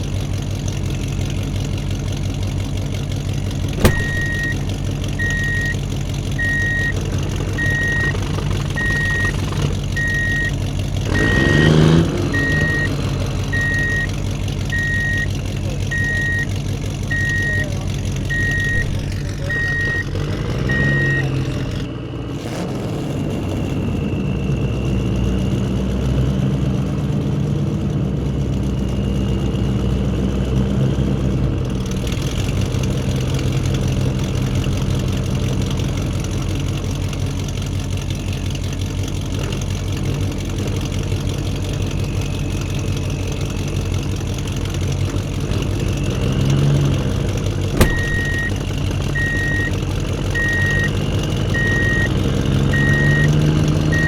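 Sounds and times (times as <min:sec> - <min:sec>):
heavy truck engine running: 0:00.0 - 0:54.0
sharp click: 0:03.8 - 0:04.5, 0:47.8 - 0:48.4
reversing alarm beeping: 0:03.8 - 0:04.6, 0:05.2 - 0:05.8, 0:06.4 - 0:07.0, 0:07.6 - 0:10.6, 0:11.2 - 0:14.1, 0:14.7 - 0:15.3, 0:15.9 - 0:21.4, 0:47.8 - 0:54.0.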